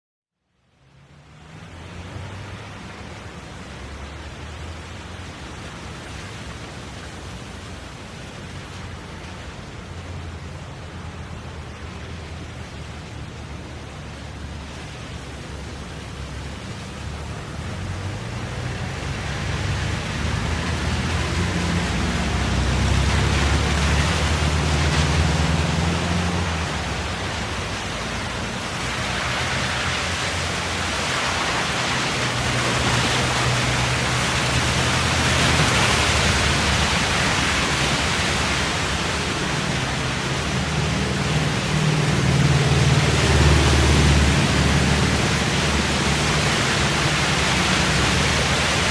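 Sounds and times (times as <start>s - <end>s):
tyres hissing on wet road: 1.0s - 48.9s
vehicle passing close: 12.3s - 48.9s.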